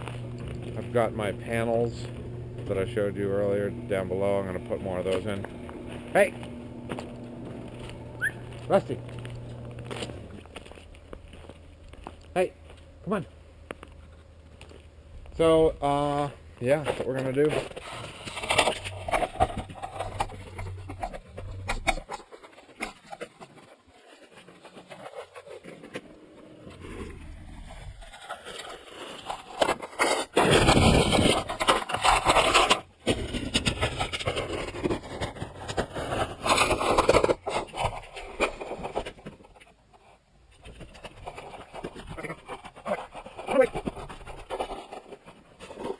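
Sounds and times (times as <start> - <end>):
handling sounds: 0.0 - 45.9
scraping and knocking: 16.8 - 26.1.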